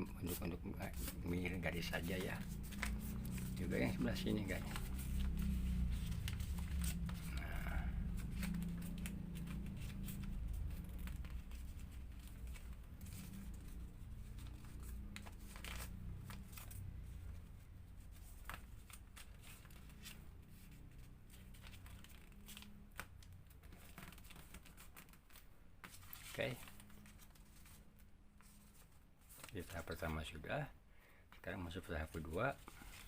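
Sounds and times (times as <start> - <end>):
low background hum: 0.0 - 33.0
paper rustling and crinkling: 0.2 - 30.1, 32.0 - 33.0.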